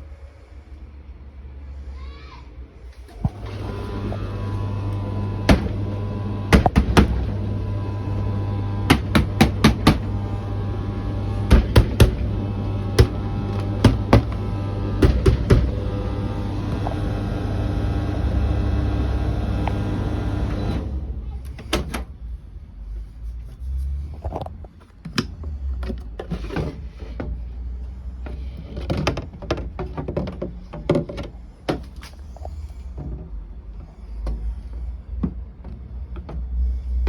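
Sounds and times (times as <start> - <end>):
tumble dryer motor hum: 3.1 - 22.2
sharp knocks in dryer: 5.4 - 5.9, 6.5 - 7.3, 8.9 - 10.2, 11.5 - 15.8.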